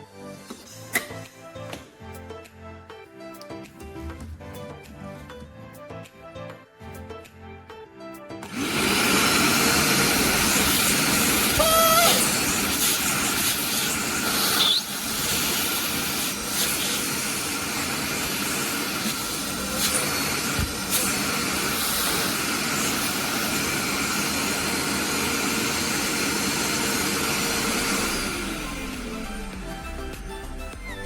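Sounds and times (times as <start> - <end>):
vacuum cleaner running: 8.4 - 29.9.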